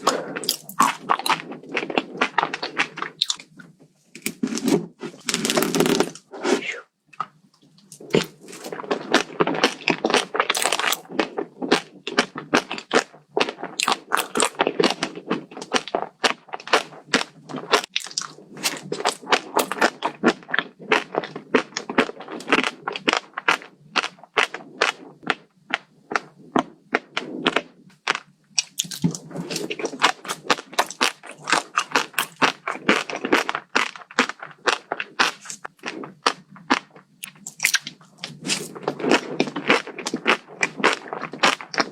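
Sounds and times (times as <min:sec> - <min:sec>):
crunchy food chewing: 0:00.0 - 0:41.9.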